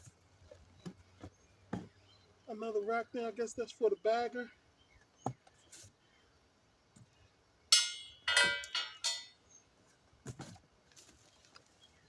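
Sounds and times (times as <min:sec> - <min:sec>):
metal clanking: 0:07.7 - 0:09.4.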